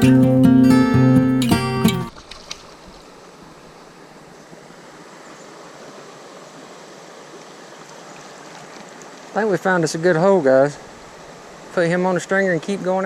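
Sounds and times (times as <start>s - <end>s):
strummed acoustic guitar: 0.0s - 2.2s
creek water flowing: 0.0s - 13.0s.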